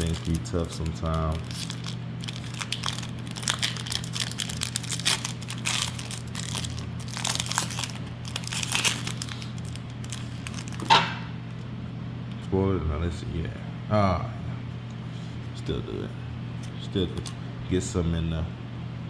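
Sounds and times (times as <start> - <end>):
foil wrapper crinkling and tearing: 0.0 - 10.9
steady low hum: 0.0 - 19.0.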